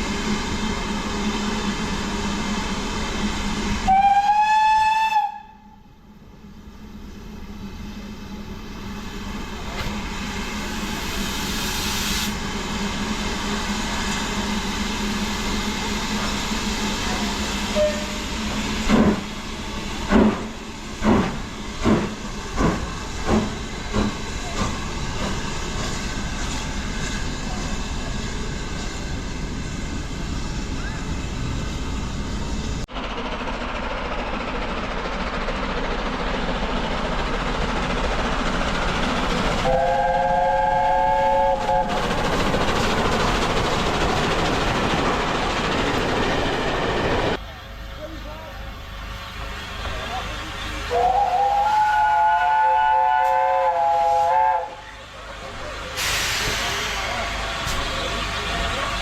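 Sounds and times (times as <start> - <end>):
steam train running and hissing: 0.0 - 59.0
steam locomotive whistle: 3.8 - 5.8, 17.7 - 18.4, 39.6 - 42.1, 50.8 - 55.0.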